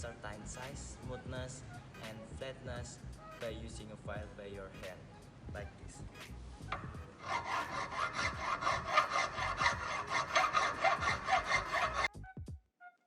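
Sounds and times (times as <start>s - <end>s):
hand file rasping on workpiece: 6.6s - 12.1s.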